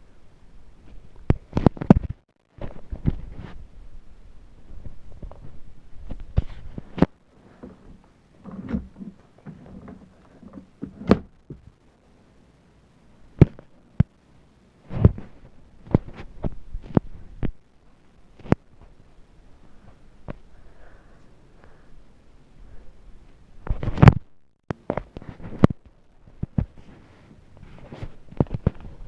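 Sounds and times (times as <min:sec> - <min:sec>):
soft rustling: 0:00.8 - 0:11.8, 0:24.9 - 0:29.0.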